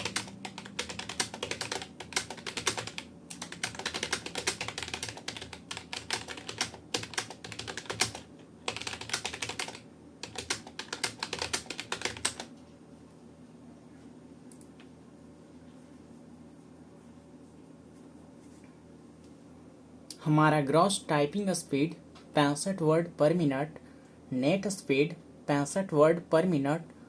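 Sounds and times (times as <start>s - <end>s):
fast typing on keyboard: 0.0s - 12.5s
low background noise: 0.0s - 27.0s.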